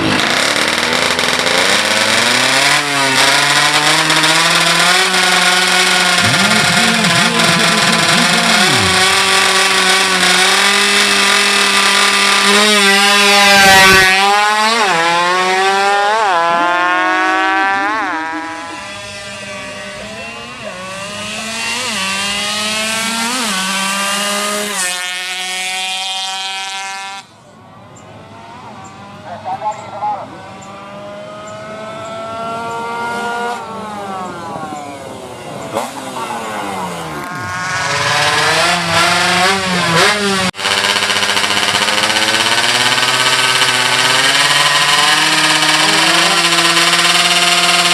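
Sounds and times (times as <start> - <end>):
motorcycle engine revving: 0.0 - 27.3, 28.2 - 47.9
motorcycle accelerating: 0.0 - 47.9.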